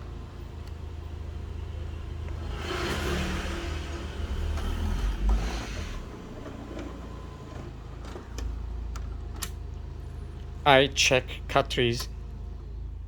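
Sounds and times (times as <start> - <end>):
printer mechanism running: 3.9 - 8.6.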